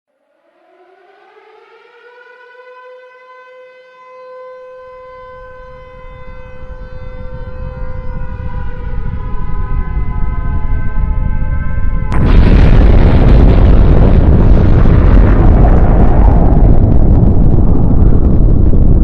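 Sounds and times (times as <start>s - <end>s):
air-raid siren wailing: 0.1s - 19.0s
deep explosion rumble: 5.7s - 19.0s.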